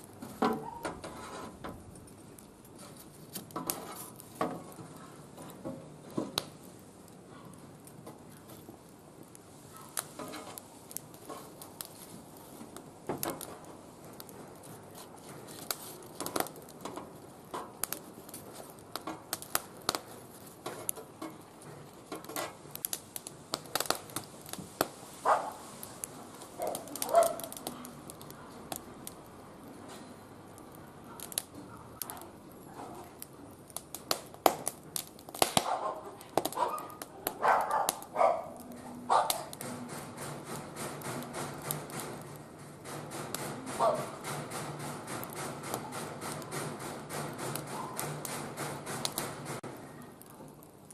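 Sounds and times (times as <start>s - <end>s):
wood fire crackling and popping: 0.0s - 50.9s.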